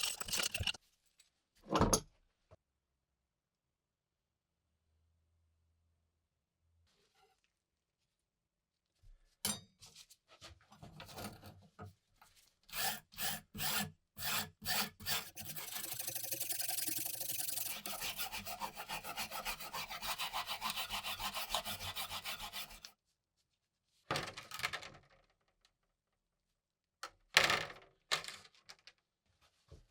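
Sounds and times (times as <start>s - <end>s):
abrasive scraping on knife: 12.8s - 22.9s.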